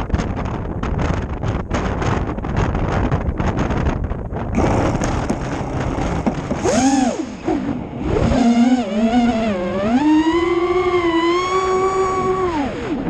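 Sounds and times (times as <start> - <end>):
wind buffeting microphone: 0.0 - 13.0
drone motors whining: 4.6 - 13.0.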